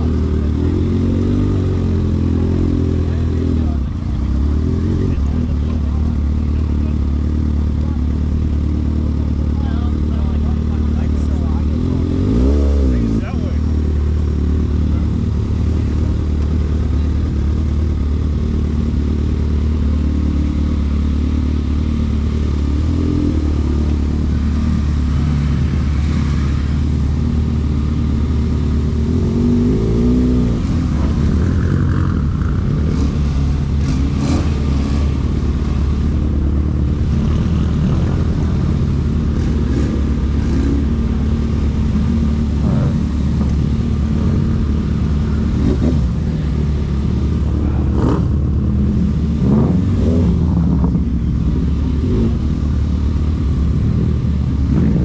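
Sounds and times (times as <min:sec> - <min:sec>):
car engines idling: 0:00.0 - 0:55.0
engine revving: 0:09.7 - 0:13.9, 0:22.0 - 0:55.0.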